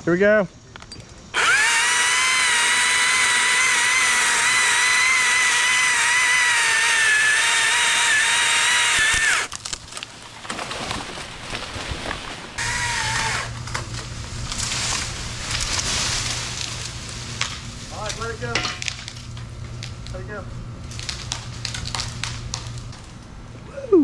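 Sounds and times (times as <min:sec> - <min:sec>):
chainsaw cutting wood: 0:01.4 - 0:09.8, 0:12.6 - 0:17.7
knocks and crackling: 0:13.5 - 0:20.2, 0:20.8 - 0:23.2.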